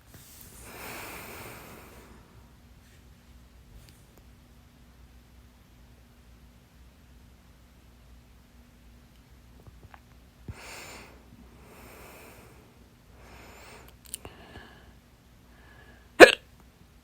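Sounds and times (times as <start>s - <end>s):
soft breaths: 0.0s - 4.2s, 10.4s - 16.2s
sharp hiccup: 16.2s - 16.5s.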